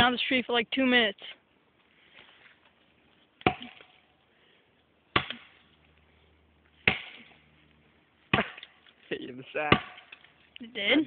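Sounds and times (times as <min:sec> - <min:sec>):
axe chopping tree trunk: 0:03.4 - 0:04.0, 0:05.1 - 0:05.7, 0:06.8 - 0:07.5, 0:08.3 - 0:08.8, 0:09.6 - 0:10.4.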